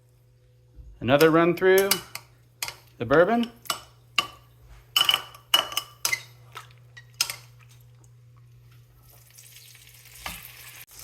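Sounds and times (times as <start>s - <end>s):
low steady hum: 0.0s - 11.0s
metal utensil clinking on dish: 1.2s - 6.3s, 7.0s - 7.5s.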